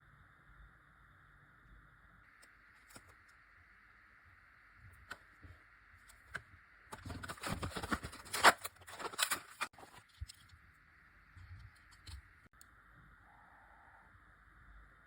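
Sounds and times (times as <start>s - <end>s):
packaging crackling and rustling: 6.9s - 10.4s.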